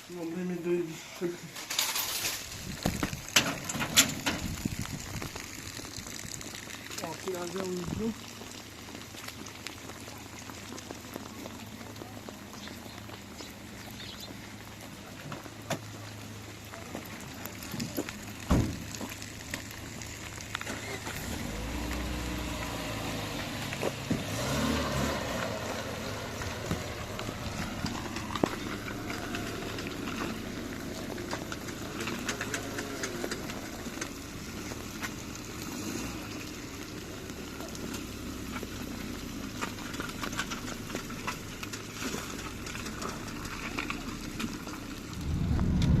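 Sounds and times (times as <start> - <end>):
city traffic: 0.0 - 46.0
rain drops ticking: 0.0 - 46.0.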